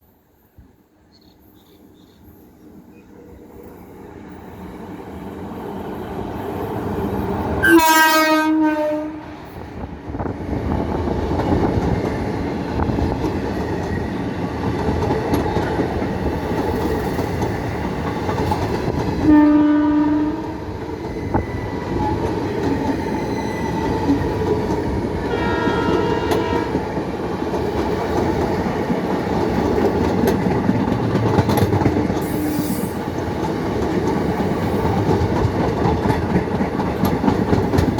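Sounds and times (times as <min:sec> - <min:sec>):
train rumbling and clacking on rails: 0:00.0 - 0:37.9
train horn blasts: 0:07.6 - 0:09.4, 0:19.2 - 0:20.7, 0:25.3 - 0:26.9.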